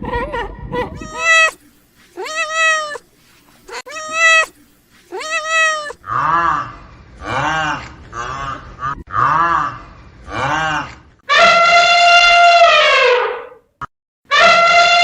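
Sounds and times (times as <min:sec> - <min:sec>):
cat meowing: 0:01.0 - 0:01.6, 0:02.2 - 0:03.0, 0:03.7 - 0:06.0
low buzzy repeated call: 0:01.0 - 0:01.6.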